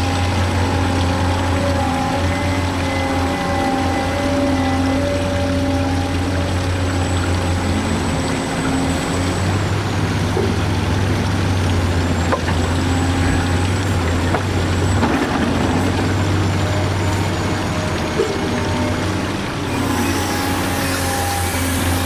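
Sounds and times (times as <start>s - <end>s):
electric motor hum and whine: 0.0s - 22.0s.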